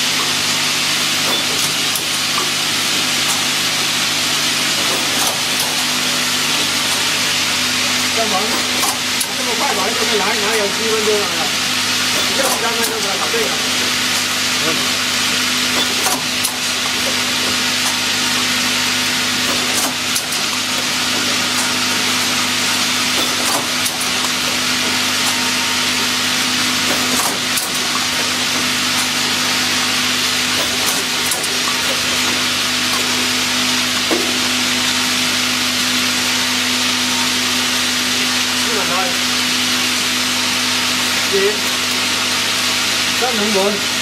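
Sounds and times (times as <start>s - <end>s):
motor hum: 0.0s - 44.0s.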